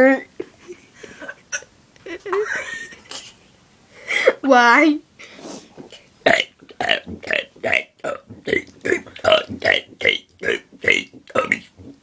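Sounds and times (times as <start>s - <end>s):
girl burping: 6.3s - 11.7s.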